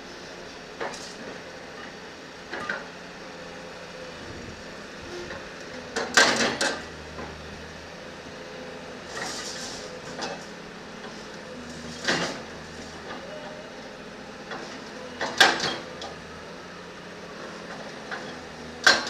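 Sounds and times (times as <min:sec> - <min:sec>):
backhoe engine running: 0:00.0 - 0:19.0
metal clanks and knocks: 0:06.0 - 0:07.4, 0:18.1 - 0:19.0.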